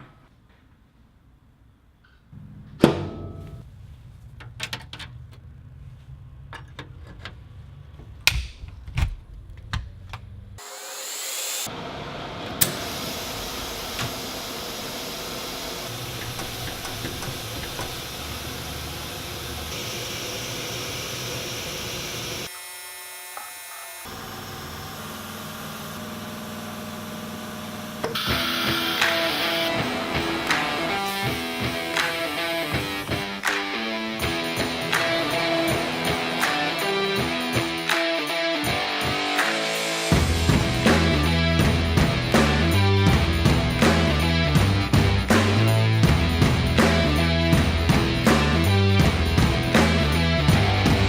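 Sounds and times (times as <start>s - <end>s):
spindle whine: 10.6s - 22.5s, 24.1s - 51.0s
cnc router whirring: 10.6s - 33.0s
scattered clicks and knocks: 16.2s - 18.1s.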